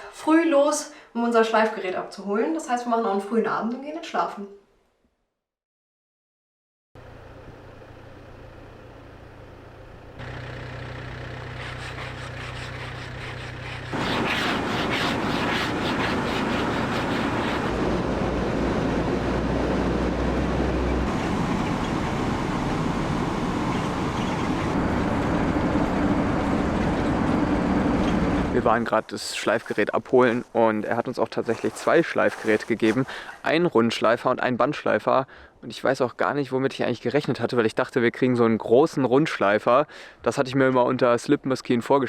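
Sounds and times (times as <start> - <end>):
car engine: 7.0 - 28.6
road noise: 7.0 - 33.3.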